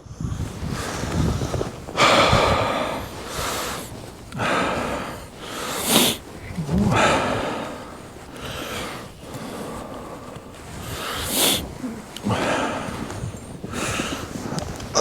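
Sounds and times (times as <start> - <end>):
man breathing heavily: 0.0 - 15.0.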